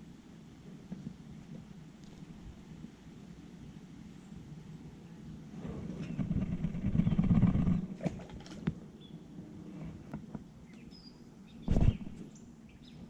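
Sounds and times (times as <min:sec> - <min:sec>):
loud thump: 0:11.7 - 0:12.2.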